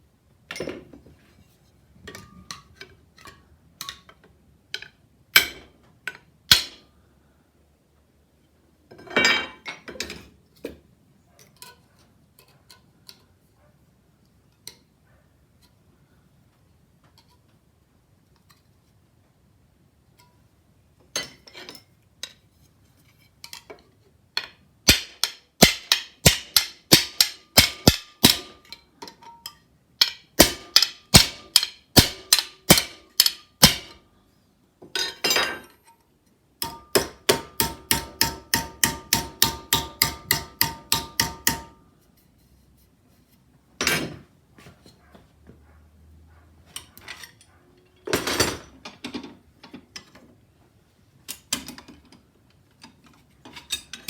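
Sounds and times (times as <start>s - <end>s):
hammer striking metal sheet: 24.9s - 28.6s, 30.4s - 33.9s.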